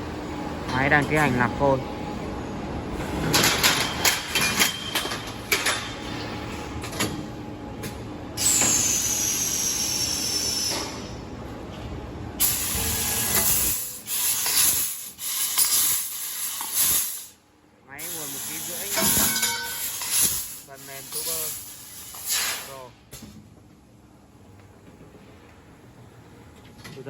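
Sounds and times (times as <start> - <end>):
loud hiss: 18.0 - 19.2.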